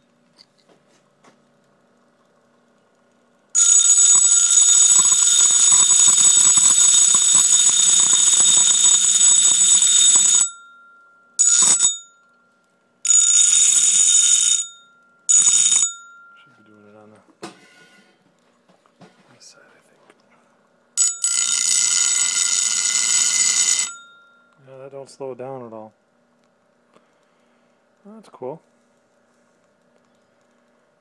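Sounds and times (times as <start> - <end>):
grinder motor whine: 3.6 - 10.4
metal grinding on wheel: 3.6 - 10.4, 21.0 - 24.0.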